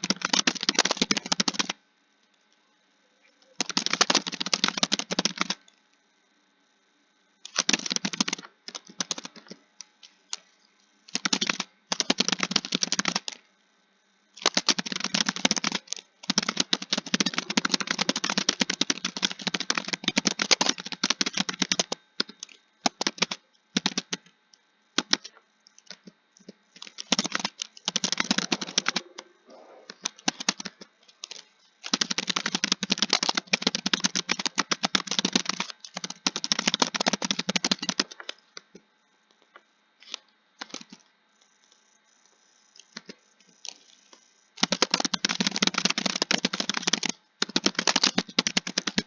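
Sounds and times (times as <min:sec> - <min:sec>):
typing on keyboard: 0:00.0 - 0:01.8, 0:03.5 - 0:05.7, 0:07.4 - 0:09.6, 0:11.1 - 0:13.4, 0:14.4 - 0:24.3, 0:25.0 - 0:29.3, 0:29.9 - 0:38.4, 0:40.0 - 0:41.0, 0:42.8 - 0:49.0.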